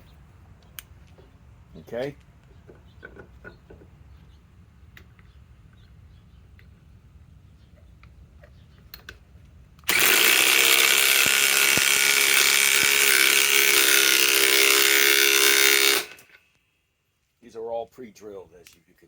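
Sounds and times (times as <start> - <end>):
impact wrench hammering: 9.9 - 16.4.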